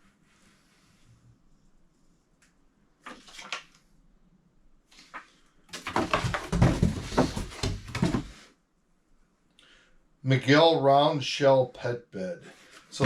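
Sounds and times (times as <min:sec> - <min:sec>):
plastic packaging rustling: 0:05.7 - 0:08.3.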